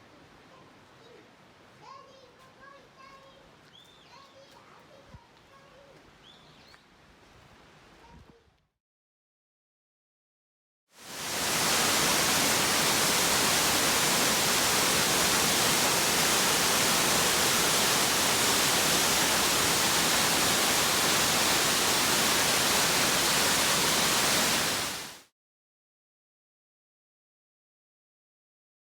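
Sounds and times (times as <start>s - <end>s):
waterfall rushing: 11.0s - 25.2s.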